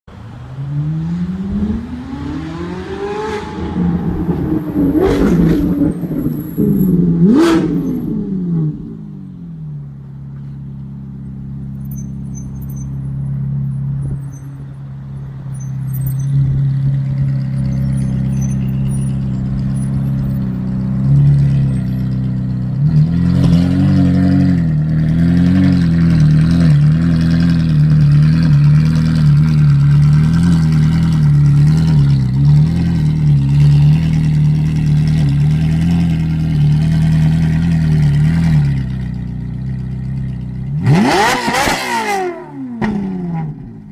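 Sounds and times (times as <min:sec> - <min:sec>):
car engine revving and idling: 0:00.1 - 0:43.9
exhaust cracks: 0:03.3 - 0:08.2.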